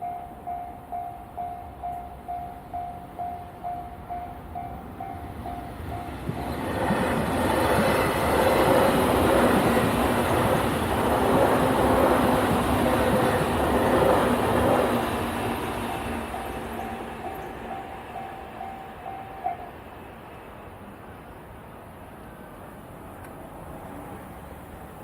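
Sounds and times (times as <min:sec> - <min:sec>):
level crossing warning bell: 0:00.0 - 0:06.7, 0:16.2 - 0:19.8
electric train passing: 0:00.0 - 0:25.0
train wheels clattering on rails: 0:03.2 - 0:19.7.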